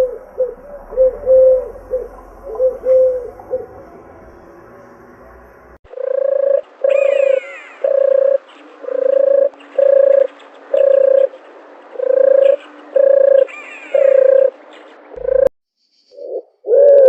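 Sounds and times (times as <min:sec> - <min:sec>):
falling bird chirp: 0:00.0 - 0:03.9, 0:06.0 - 0:16.4
low animal call: 0:00.0 - 0:04.8.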